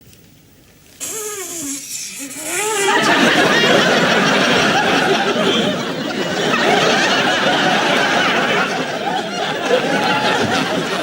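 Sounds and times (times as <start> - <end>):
audience laughing: 2.2 - 11.0.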